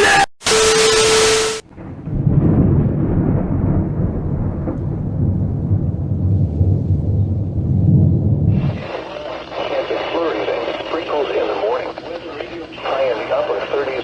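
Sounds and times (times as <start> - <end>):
rolling rumble of thunder: 1.7 - 9.0.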